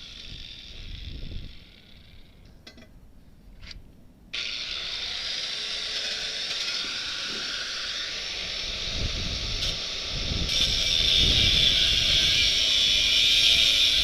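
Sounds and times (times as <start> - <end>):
power tool grinding steel: 0.0 - 2.3, 4.4 - 14.0.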